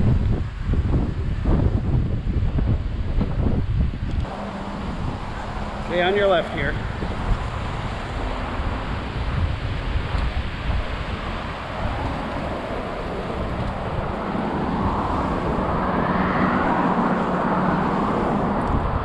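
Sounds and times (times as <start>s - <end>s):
vehicle road noise: 0.0s - 19.0s
wind rushing over microphone: 0.0s - 19.0s.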